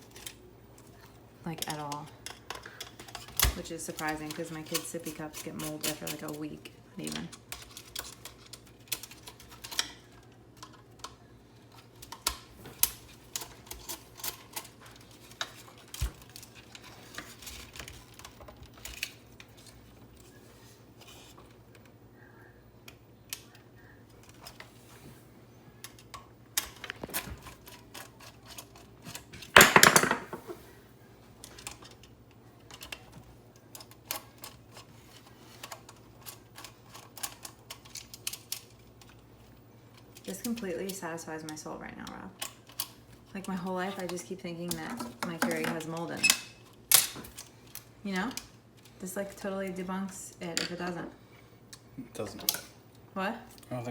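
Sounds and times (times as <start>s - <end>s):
plastic parts clattering: 25.8s - 30.6s.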